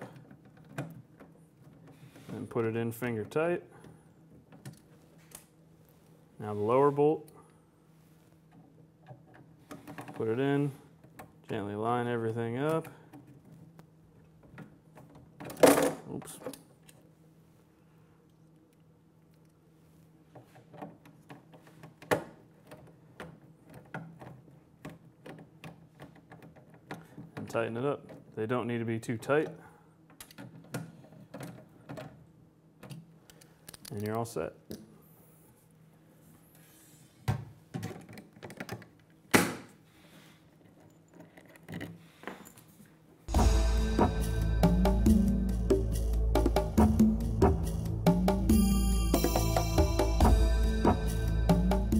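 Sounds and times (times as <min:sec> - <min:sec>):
metal parts clicking and tapping: 0:29.4 - 0:32.1, 0:32.8 - 0:34.8
music: 0:43.3 - 0:51.9.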